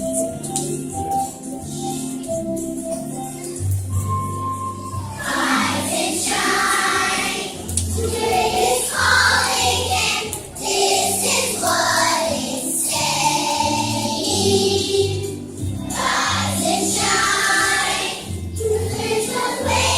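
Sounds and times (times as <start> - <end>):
musical accompaniment: 0.0 - 19.9
children's choir singing: 4.9 - 19.9.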